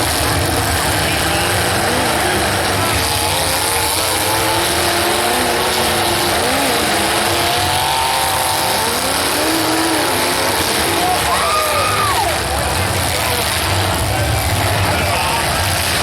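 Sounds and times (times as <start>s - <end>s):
car engines revving: 0.0s - 16.0s.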